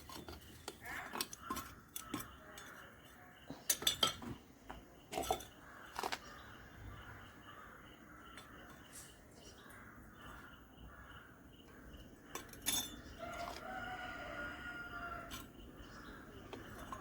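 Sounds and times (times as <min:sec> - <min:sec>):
rooster crowing: 0:13.2 - 0:15.4.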